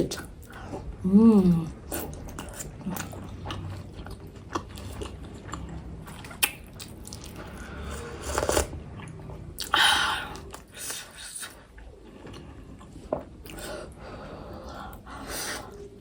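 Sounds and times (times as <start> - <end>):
chewing wet mouth sounds: 1.6 - 13.7.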